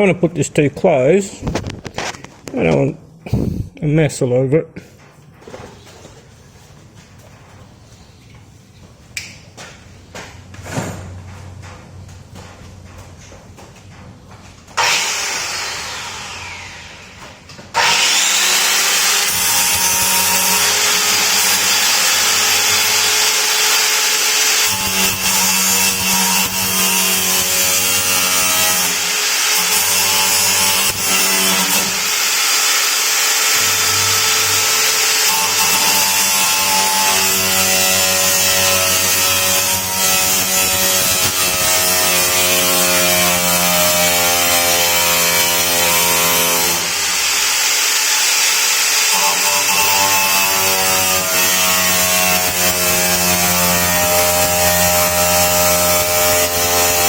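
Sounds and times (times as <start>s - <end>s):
power tool cutting metal: 14.8s - 57.0s.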